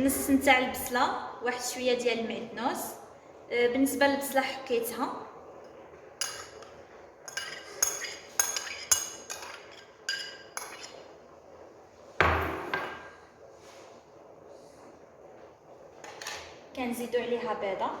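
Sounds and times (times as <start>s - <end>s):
utensil clatter: 6.2s - 11.1s
utensils clinking against dishes: 6.2s - 11.1s.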